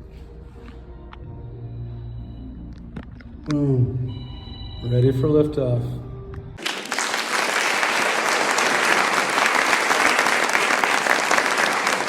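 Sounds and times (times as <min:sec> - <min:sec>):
crowd applause: 0:06.6 - 0:12.0.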